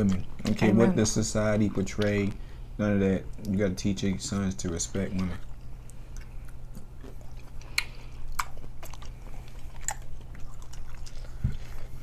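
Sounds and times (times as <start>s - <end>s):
steady low hum: 0.0s - 12.0s
person chewing food: 5.0s - 12.0s
wet mouth clicks: 5.2s - 9.2s.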